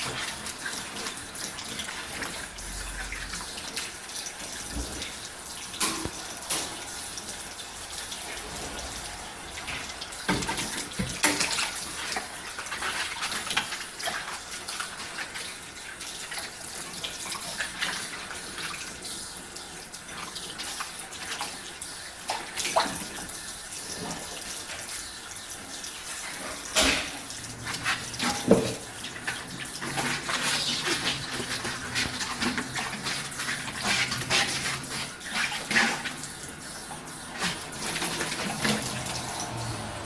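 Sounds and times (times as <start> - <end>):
tap water running into sink: 0.0 - 40.0
dishes clinking: 26.5 - 27.2.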